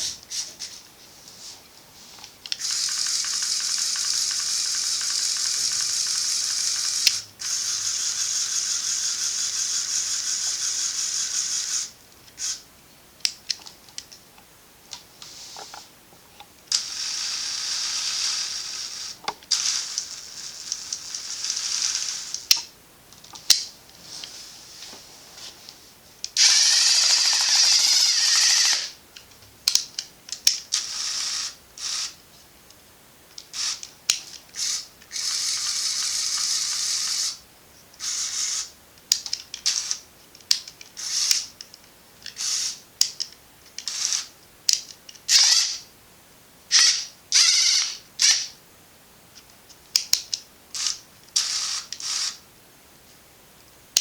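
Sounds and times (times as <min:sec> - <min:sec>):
toy motors and gears whirring: 0:02.5 - 0:12.6, 0:16.7 - 0:22.7, 0:26.3 - 0:29.0, 0:29.7 - 0:32.2, 0:33.4 - 0:37.4, 0:38.0 - 0:45.9, 0:46.7 - 0:48.6, 0:49.9 - 0:52.4.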